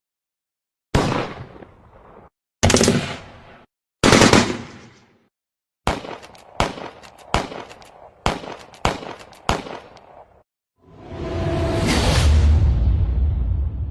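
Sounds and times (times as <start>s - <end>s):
heavy gunshots with echoes: 1.0s - 1.7s, 2.6s - 5.0s, 5.9s - 9.9s
rapid gunshots: 2.6s - 3.3s, 4.0s - 5.1s, 5.9s - 10.3s.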